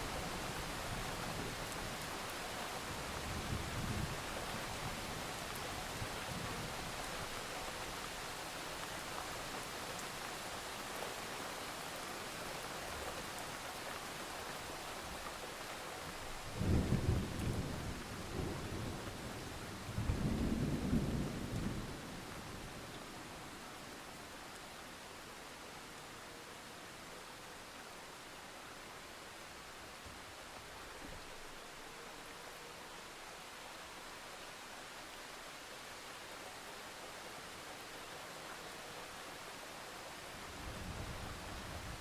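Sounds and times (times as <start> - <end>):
steady rain: 0.0 - 42.0
low rolls of thunder: 16.4 - 22.9.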